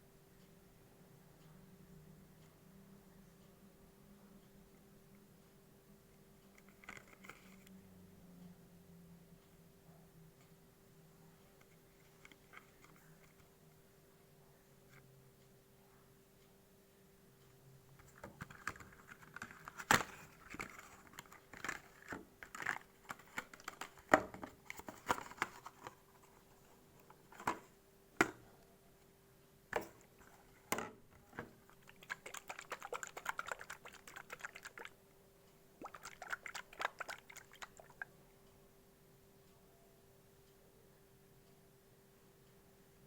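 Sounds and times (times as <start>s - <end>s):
packaging taps and crackling: 18.0s - 28.4s.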